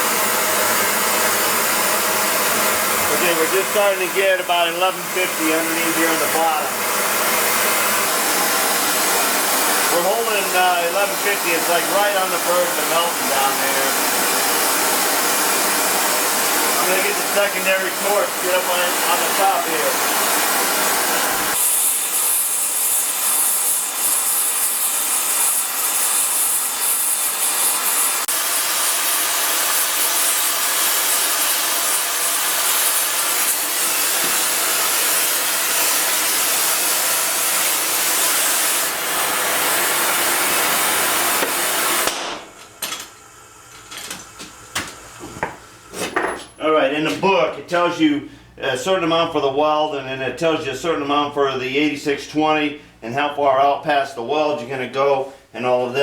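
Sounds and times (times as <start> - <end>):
gas torches hissing: 0.0 - 46.6.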